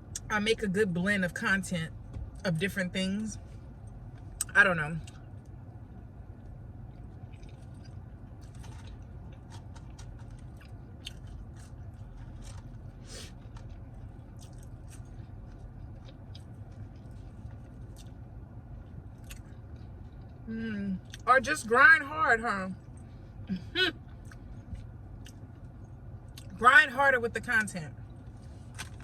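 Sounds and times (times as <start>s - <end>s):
steady low hum: 0.0s - 29.0s
person chewing food: 6.8s - 21.2s, 24.2s - 26.6s.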